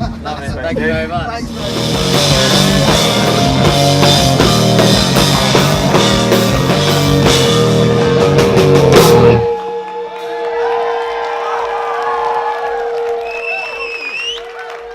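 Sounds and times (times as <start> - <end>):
regular drum strikes: 0.0 - 9.6
live punk rock band: 0.0 - 13.3.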